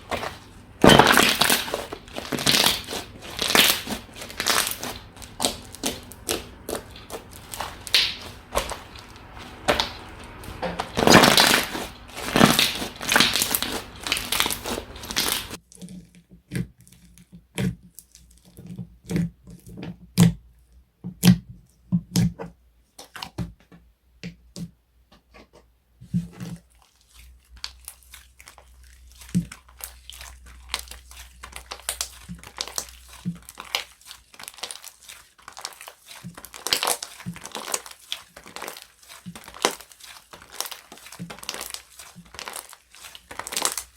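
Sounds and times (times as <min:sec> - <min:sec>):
slime crackling: 0:00.0 - 0:15.6, 0:26.4 - 0:43.9.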